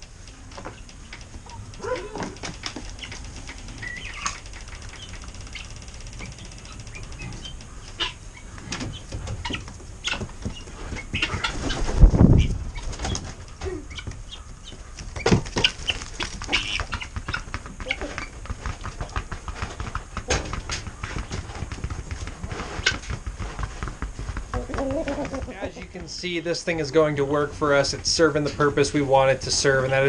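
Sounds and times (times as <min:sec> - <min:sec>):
sharp taps and ticks: 0:00.0 - 0:10.6, 0:13.1 - 0:26.4
chickens flapping wings: 0:00.0 - 0:30.0.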